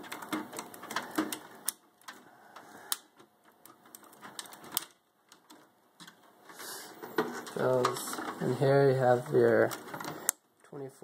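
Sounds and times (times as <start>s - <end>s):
plastic cable connectors clicking: 2.9s - 6.3s.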